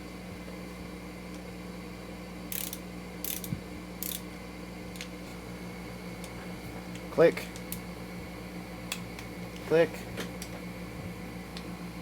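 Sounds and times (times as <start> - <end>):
ratchet wrench ratcheting: 2.5 - 4.2.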